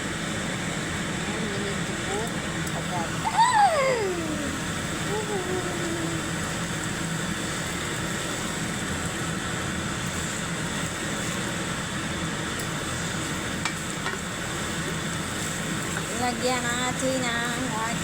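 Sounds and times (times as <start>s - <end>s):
chicken frying in a pan: 4.4s - 18.0s.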